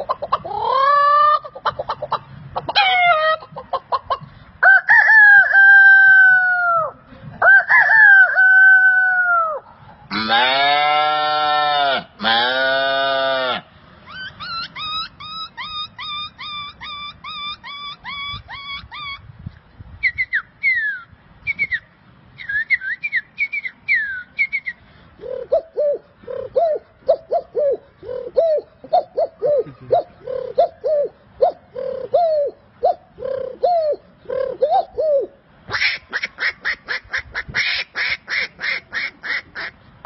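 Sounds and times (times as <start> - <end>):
harsh rapid bird calls: 14.0 - 19.3
lower rising and falling bird calls: 14.0 - 19.3, 20.0 - 37.1.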